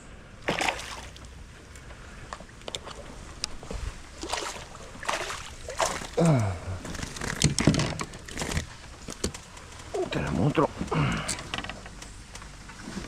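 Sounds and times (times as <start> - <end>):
water sloshing and splashing: 0.4 - 10.2
short falling vocal sound: 6.2 - 6.9.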